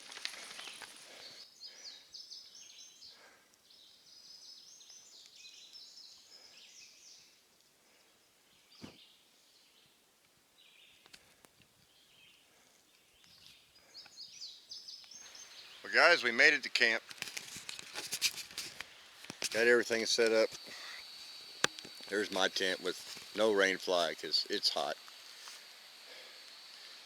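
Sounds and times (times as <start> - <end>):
faint bird chirping: 0.0 - 18.3.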